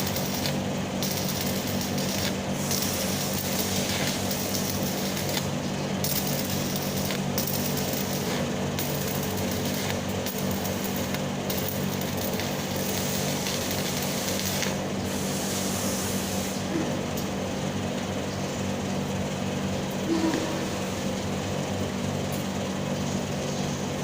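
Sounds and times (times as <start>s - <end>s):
welding arc crackling and hissing: 0.0s - 16.7s.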